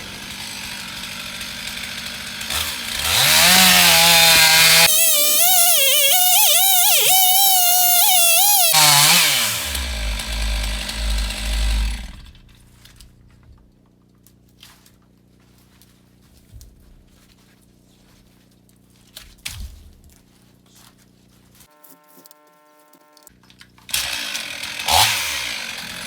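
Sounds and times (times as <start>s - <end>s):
chainsaw cutting wood: 0.0s - 12.6s, 23.9s - 26.0s.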